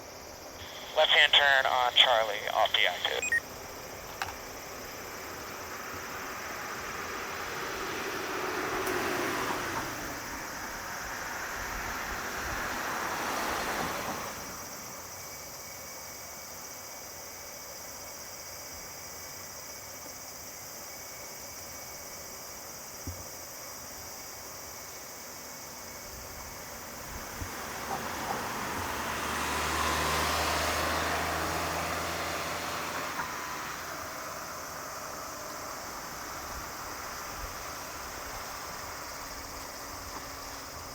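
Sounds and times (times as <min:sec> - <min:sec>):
high insect drone: 0:02.8 - 0:40.9.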